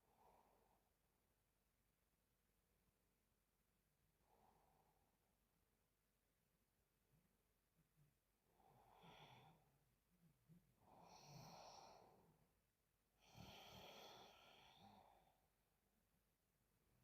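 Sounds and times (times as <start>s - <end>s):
woman snoring quietly: 10.9s - 12.3s, 13.2s - 15.2s.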